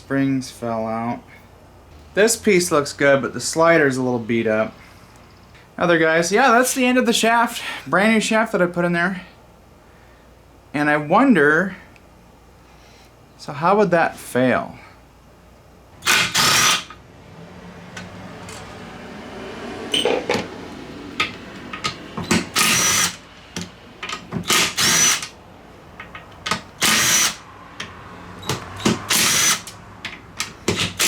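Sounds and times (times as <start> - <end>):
power tool bursts: 16.0 - 17.0, 22.2 - 23.2, 24.4 - 25.3, 26.8 - 27.4, 28.5 - 29.8.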